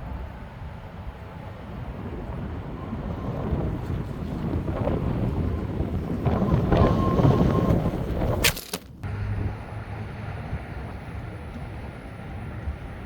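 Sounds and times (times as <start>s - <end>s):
wind buffeting microphone: 0.0s - 13.0s
sharp click: 8.4s - 8.9s.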